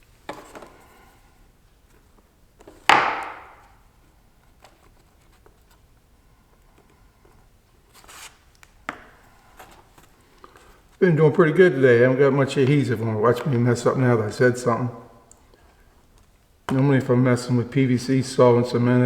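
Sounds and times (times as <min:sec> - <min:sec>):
soft rustle: 0:03.7 - 0:11.0.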